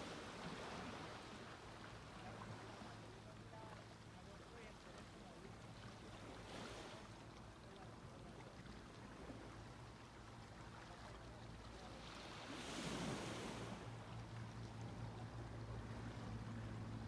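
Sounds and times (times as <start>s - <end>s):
small waves breaking on beach: 0.0s - 17.0s.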